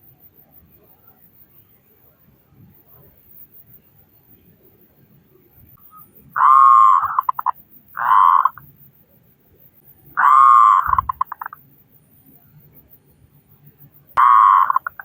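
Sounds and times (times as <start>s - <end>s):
dove cooing: 6.4s - 8.6s, 10.2s - 11.6s, 14.2s - 15.0s.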